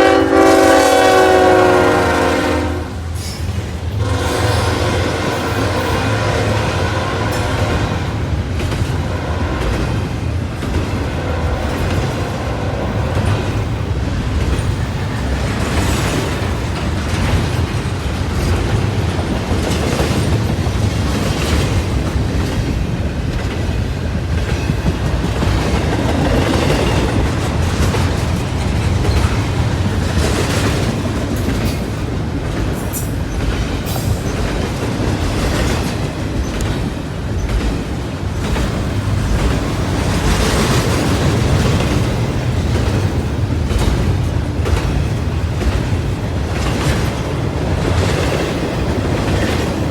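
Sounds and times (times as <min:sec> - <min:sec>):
freight train rumbling past: 0:00.0 - 0:49.9
wheels clacking over rail joints: 0:07.2 - 0:49.9.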